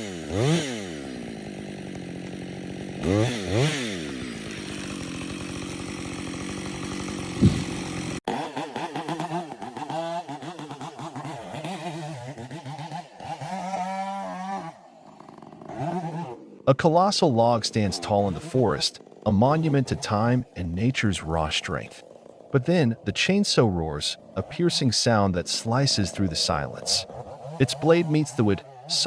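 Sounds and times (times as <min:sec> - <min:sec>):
chainsaw engine revving: 0:00.0 - 0:29.0.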